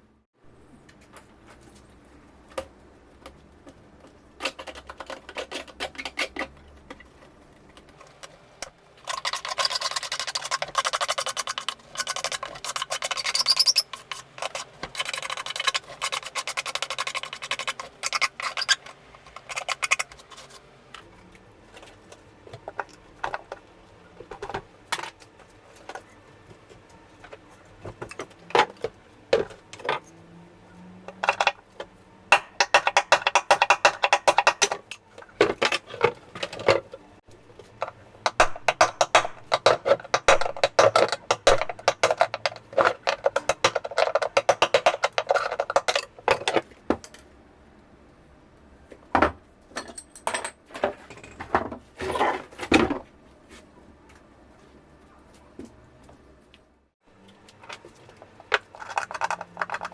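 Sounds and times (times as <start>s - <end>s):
hand tool scraping metal: 9.1s - 20.6s
metal knocks and clinks: 31.1s - 36.9s, 37.5s - 46.6s, 49.2s - 51.4s.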